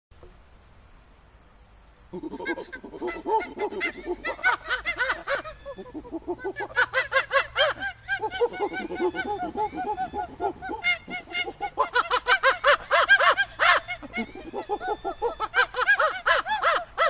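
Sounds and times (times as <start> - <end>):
monkey squeaky calls: 2.2 - 17.0.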